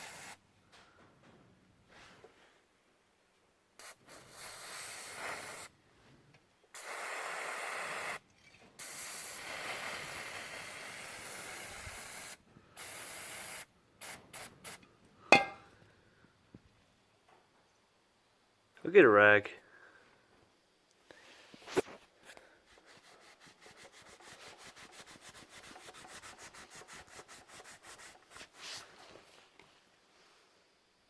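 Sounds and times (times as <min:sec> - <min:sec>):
aerosol can spraying: 0:00.0 - 0:00.4, 0:03.8 - 0:05.7, 0:06.8 - 0:08.2, 0:08.8 - 0:14.8, 0:22.7 - 0:28.8.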